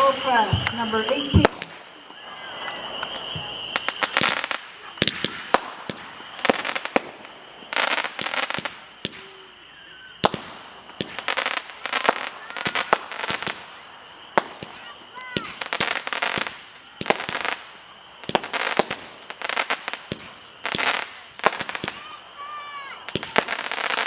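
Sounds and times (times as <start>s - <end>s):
roman candles popping: 0.0s - 9.6s
fireworks crackling: 0.0s - 24.0s.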